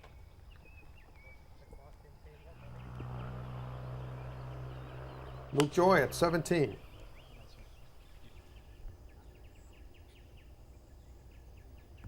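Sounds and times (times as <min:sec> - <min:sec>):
low background rumble: 0:02.5 - 0:09.5.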